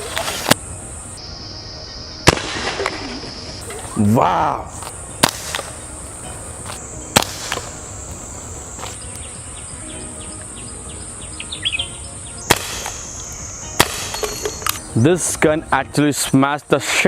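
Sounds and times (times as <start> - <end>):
high insect drone: 0.0 - 17.0
bb pistol shots: 2.2 - 3.0, 5.2 - 5.8, 7.1 - 7.8, 12.5 - 13.0, 13.8 - 14.8.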